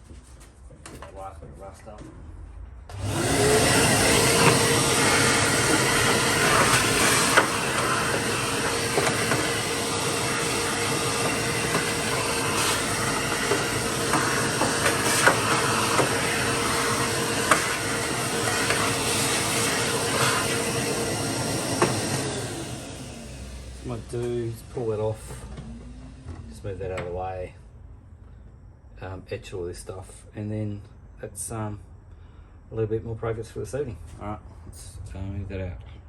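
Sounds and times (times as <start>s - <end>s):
vacuum cleaner running: 2.9s - 27.3s.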